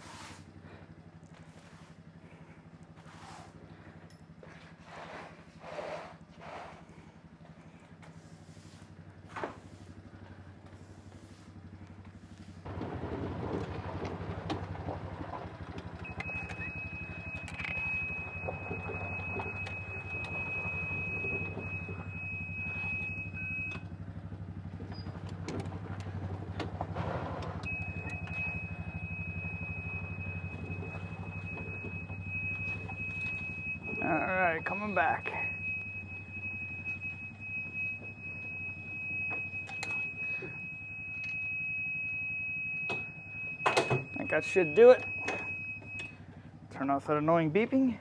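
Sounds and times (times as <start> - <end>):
golf cart engine running: 0.0 - 48.0
high-pitched beep tone: 16.1 - 23.8, 27.6 - 46.1.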